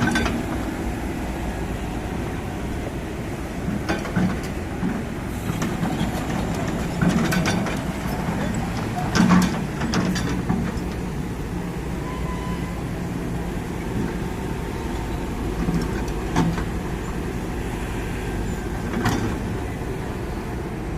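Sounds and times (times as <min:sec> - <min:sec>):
excavator diesel engine running: 0:00.0 - 0:20.9.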